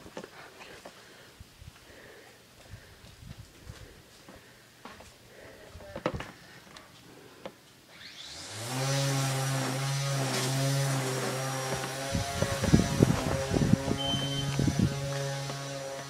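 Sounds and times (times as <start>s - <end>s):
small engine running: 7.9s - 16.0s.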